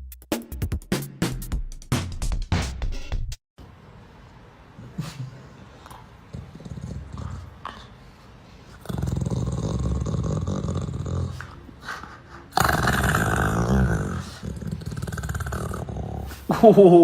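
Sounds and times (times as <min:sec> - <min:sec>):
dog growling: 0:05.7 - 0:16.6.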